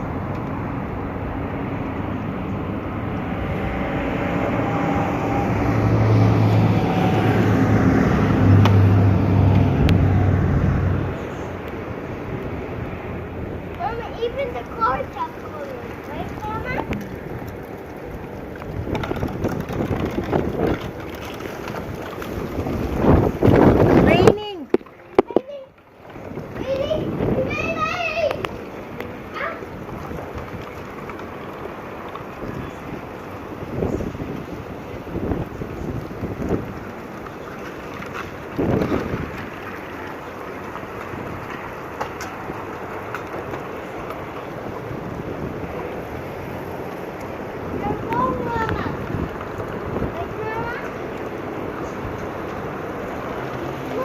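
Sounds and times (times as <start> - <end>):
wind buffeting microphone: 0.0 - 54.0
crackles: 13.7 - 26.9.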